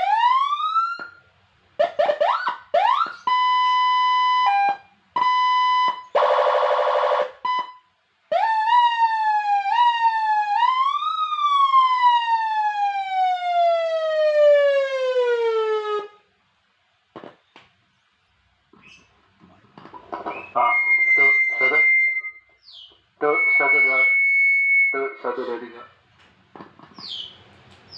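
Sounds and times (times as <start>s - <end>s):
electronic siren: 0.0s - 1.2s, 1.8s - 16.2s, 20.2s - 22.5s, 23.2s - 25.4s.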